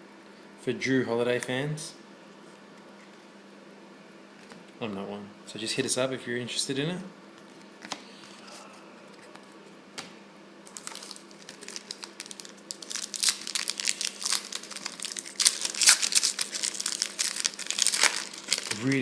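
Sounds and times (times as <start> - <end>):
foil wrapper crinkling and tearing: 10.6 - 19.0.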